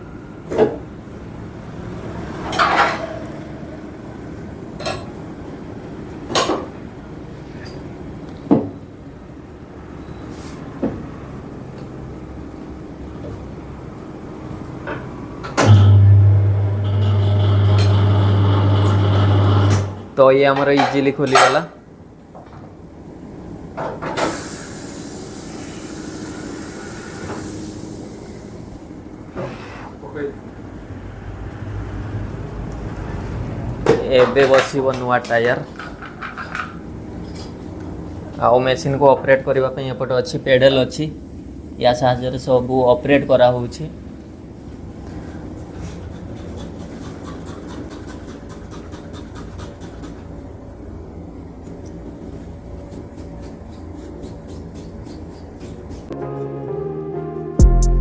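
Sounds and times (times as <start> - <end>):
low machine hum: 15.5 - 20.2
compressed air hissing: 24.2 - 28.7.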